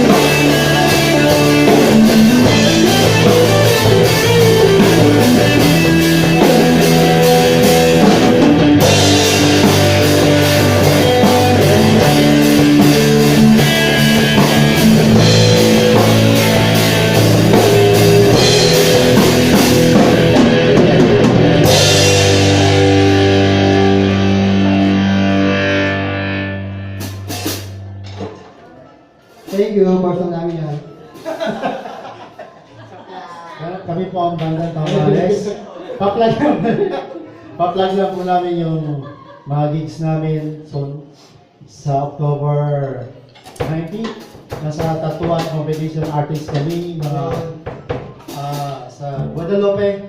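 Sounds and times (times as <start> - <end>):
guitar chord ringing out: 0.0 - 28.0
live rock band playing: 0.0 - 28.6, 43.6 - 49.9.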